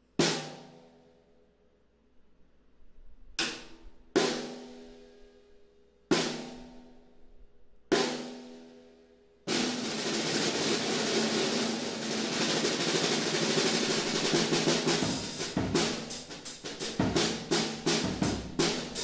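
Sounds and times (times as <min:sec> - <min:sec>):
snare drum hard strokes: 0:09.5 - 0:19.0.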